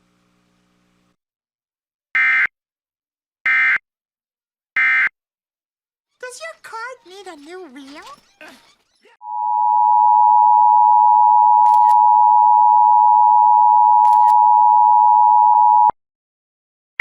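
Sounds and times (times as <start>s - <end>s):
two-tone alarm tone: 9.2s - 15.9s.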